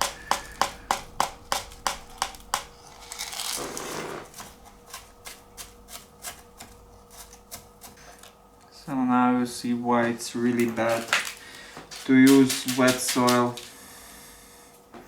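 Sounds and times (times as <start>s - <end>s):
scoop tapping: 0.0s - 3.1s.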